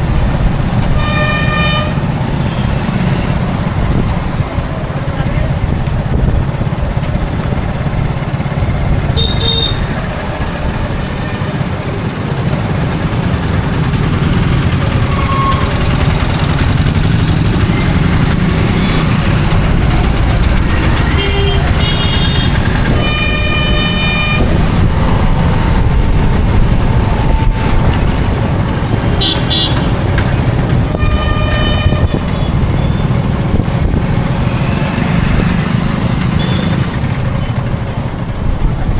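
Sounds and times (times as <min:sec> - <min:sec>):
road traffic rumble: 0:00.0 - 0:38.9
vehicle horns honking: 0:00.8 - 0:04.0, 0:09.0 - 0:10.2, 0:14.2 - 0:16.2, 0:20.6 - 0:25.0, 0:27.2 - 0:35.3, 0:36.2 - 0:37.6.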